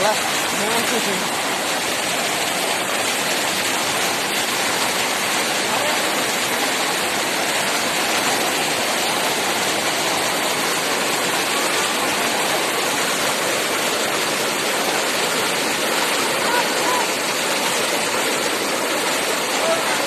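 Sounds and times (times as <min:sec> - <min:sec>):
floodwater rushing: 0:00.0 - 0:20.0.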